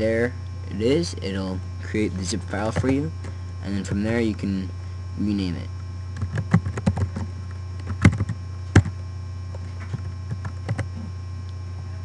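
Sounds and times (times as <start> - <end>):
mains hum: 0.0 - 12.0.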